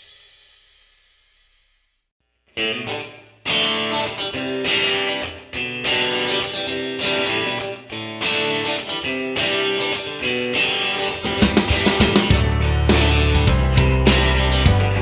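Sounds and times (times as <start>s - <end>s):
strummed guitar chords: 2.6s - 15.0s.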